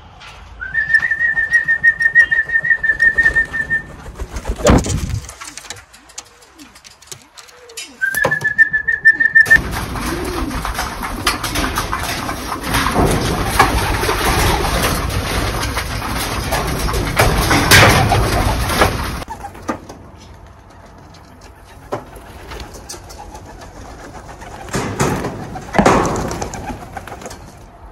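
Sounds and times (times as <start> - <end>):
pigeons cooing: 2.0 - 19.6
loud rustling and clicking: 3.0 - 8.3, 9.5 - 27.8.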